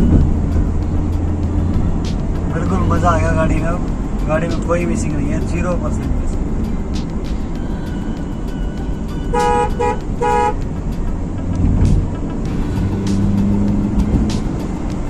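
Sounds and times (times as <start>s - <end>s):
car driving drone: 0.0s - 15.0s
car horn beeps: 9.3s - 10.6s.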